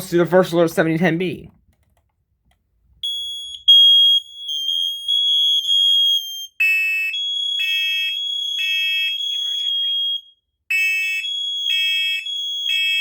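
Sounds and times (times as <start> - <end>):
buzzy pulsing alarm: 3.0 - 13.0
high-pitched smoke alarm tone: 3.0 - 13.0.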